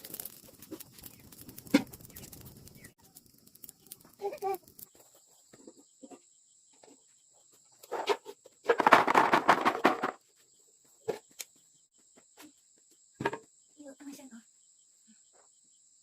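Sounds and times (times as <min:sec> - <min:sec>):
dense rustling crackle: 0:00.0 - 0:05.4
high insect trill: 0:00.0 - 0:06.3.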